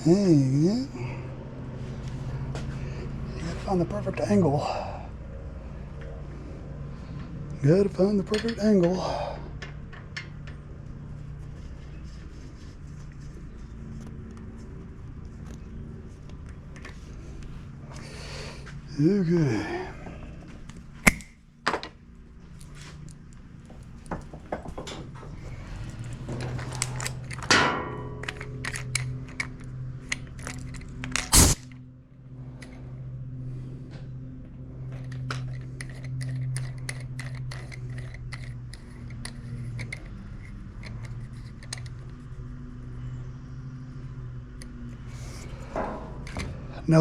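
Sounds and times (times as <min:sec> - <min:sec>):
steady low hum: 0:00.0 - 0:47.0
metal tools clicking and clinking: 0:08.2 - 0:09.0, 0:23.7 - 0:31.3.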